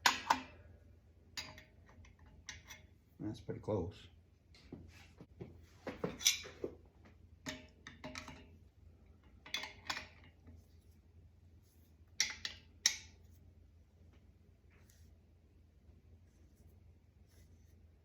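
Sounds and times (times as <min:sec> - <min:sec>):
wrench clinking on metal pipe: 0:01.4 - 0:02.9.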